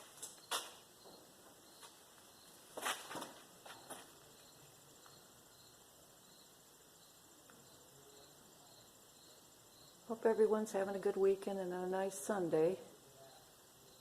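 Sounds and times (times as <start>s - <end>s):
insect chirping: 0.0s - 10.8s, 11.9s - 14.0s.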